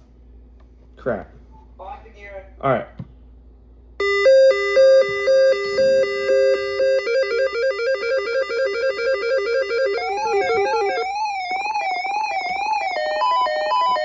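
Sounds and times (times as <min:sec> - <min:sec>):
weather alert radio two-tone beeping: 0:04.0 - 0:11.1
warbling siren tone: 0:04.0 - 0:14.0.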